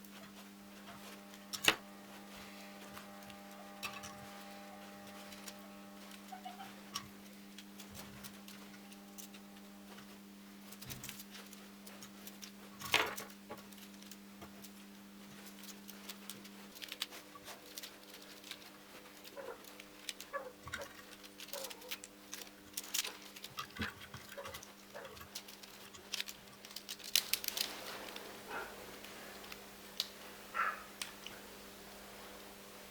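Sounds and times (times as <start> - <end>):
faint steady hum: 0.0 - 32.9
small objects clicking and tapping: 15.4 - 28.2.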